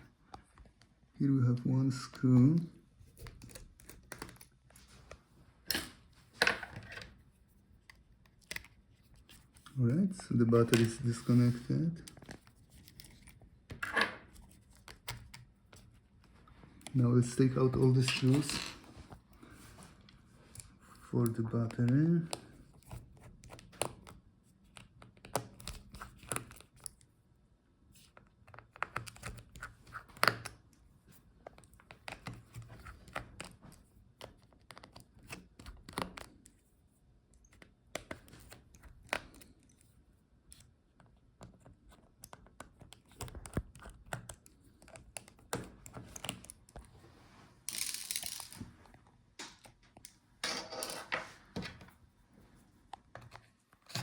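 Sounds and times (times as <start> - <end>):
tool being set down: 50.4 - 51.3.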